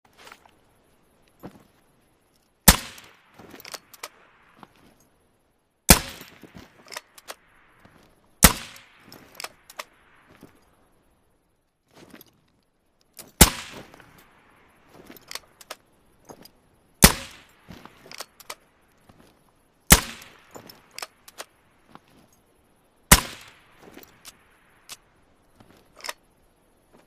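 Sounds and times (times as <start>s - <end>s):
air rifle shots: 2.7s - 4.2s, 5.9s - 7.4s, 8.4s - 10.2s, 13.4s - 14.0s, 17.0s - 18.4s, 19.9s - 21.5s, 23.1s - 23.8s.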